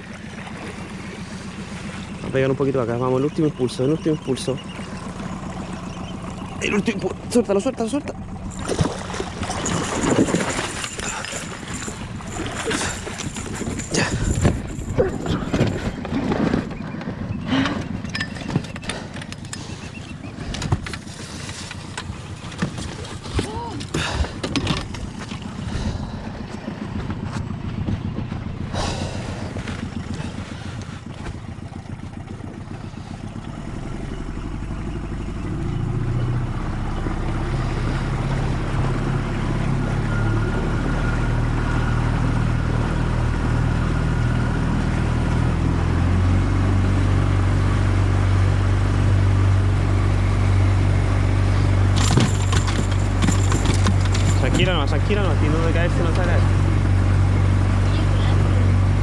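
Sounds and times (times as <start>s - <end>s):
motor engine running: 0.0s - 59.0s
knocks and clatter: 8.5s - 19.6s, 51.9s - 55.0s.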